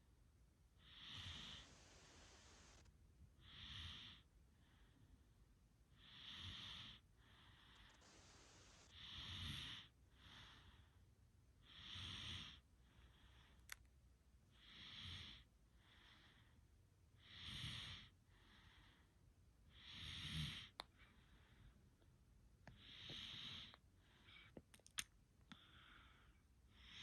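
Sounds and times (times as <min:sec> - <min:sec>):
snoring breaths: 0:00.8 - 0:05.0, 0:06.0 - 0:11.0, 0:11.6 - 0:13.7, 0:14.6 - 0:16.5, 0:17.2 - 0:19.1, 0:19.7 - 0:21.7, 0:22.7 - 0:24.6.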